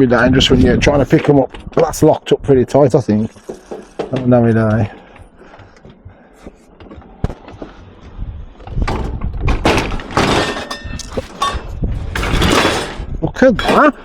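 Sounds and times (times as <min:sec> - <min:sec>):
scrap metal clanking and banging: 0:08.8 - 0:14.0.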